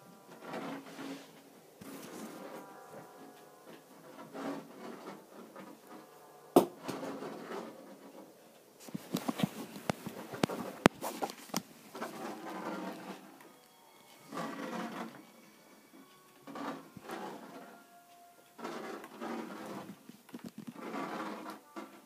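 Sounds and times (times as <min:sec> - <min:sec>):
scratching and scraping: 0:00.1 - 0:13.5, 0:14.1 - 0:17.9, 0:18.5 - 0:22.0.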